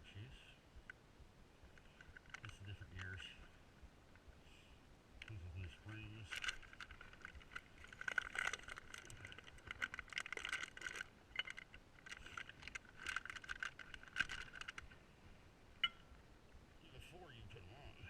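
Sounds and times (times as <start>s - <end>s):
metal parts clinking and rattling: 6.0s - 15.0s.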